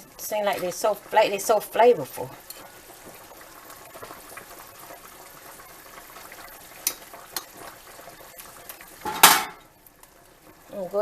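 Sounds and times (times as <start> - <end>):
broth bubbling in a pot: 0.0 - 11.0.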